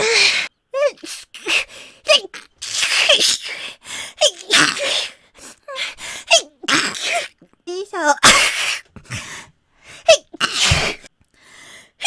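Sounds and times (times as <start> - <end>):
woman sneezing: 8.2 - 8.9, 10.1 - 11.1.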